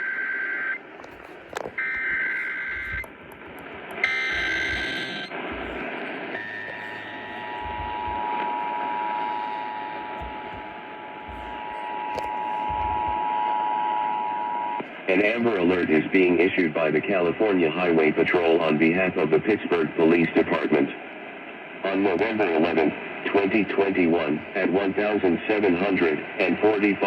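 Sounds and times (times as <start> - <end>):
harsh data bursts: 0.9 - 13.4
two-tone attention signal: 1.2 - 8.4.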